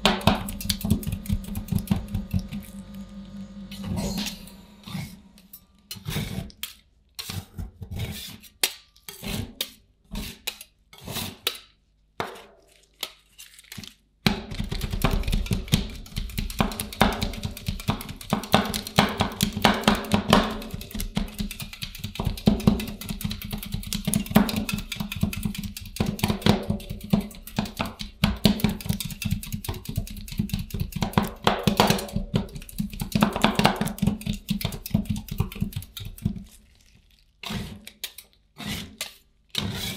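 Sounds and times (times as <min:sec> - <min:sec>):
metal spatulas chopping on steel: 0:00.0 - 0:02.5.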